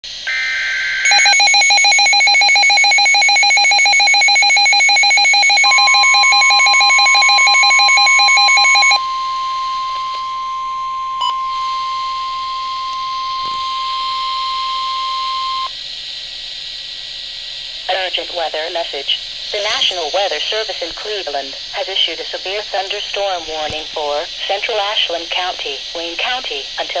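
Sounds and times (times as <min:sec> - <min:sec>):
steady warning tone: 0:00.2 - 0:15.8
fast-pulsing attention signal: 0:00.3 - 0:15.7.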